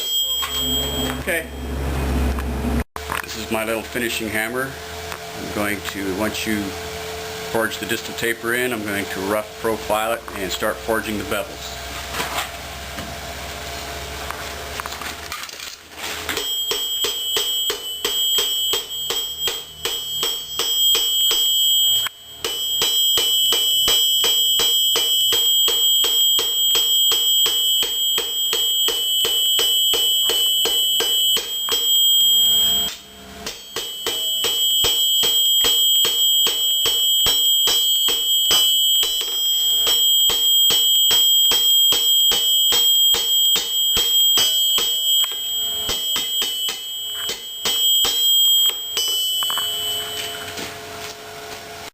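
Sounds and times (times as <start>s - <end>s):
hammer blows on hot steel: 16.3s - 50.6s
anvil ringing: 16.3s - 50.8s.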